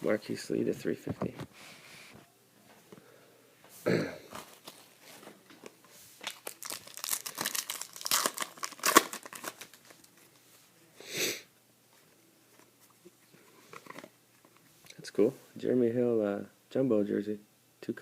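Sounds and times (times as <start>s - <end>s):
wrapper tearing and crinkling: 6.2s - 10.2s
wrapper rustling: 6.2s - 10.4s.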